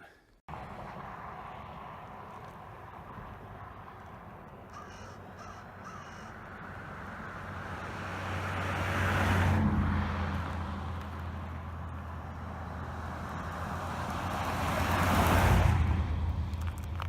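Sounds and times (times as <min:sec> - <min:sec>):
car passing by: 0:00.5 - 0:04.6, 0:06.2 - 0:16.8
vehicle approaching: 0:00.5 - 0:17.0.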